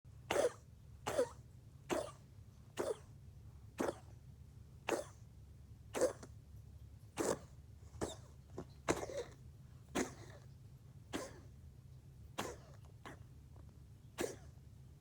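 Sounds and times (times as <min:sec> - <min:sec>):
pet coughing: 0:00.2 - 0:03.2, 0:03.8 - 0:04.2, 0:04.8 - 0:05.3, 0:05.9 - 0:06.4, 0:07.2 - 0:11.6, 0:12.3 - 0:13.4, 0:14.1 - 0:14.6.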